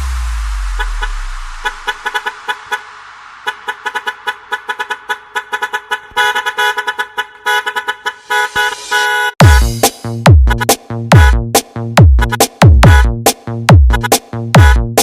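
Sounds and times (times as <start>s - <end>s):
low bass rumble: 0.0s - 3.4s, 9.4s - 15.0s
truck air horn stabs in dance music: 0.1s - 15.0s.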